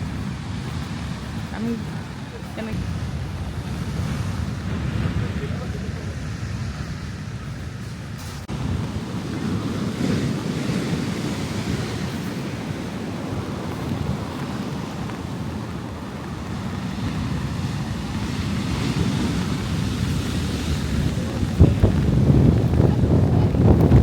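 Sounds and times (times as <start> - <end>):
ocean surf breaking on shore: 0.0 - 24.0
wind buffeting microphone: 0.0 - 24.0.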